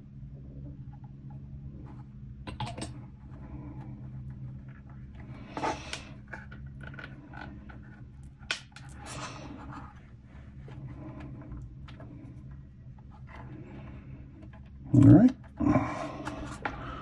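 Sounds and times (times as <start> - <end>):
steady low hum: 0.0 - 17.0
plastic parts clicking and scraping: 4.8 - 10.0.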